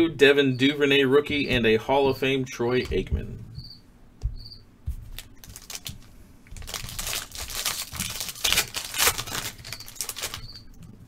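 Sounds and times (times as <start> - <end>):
wrapper crinkling and rustling: 5.1 - 11.0.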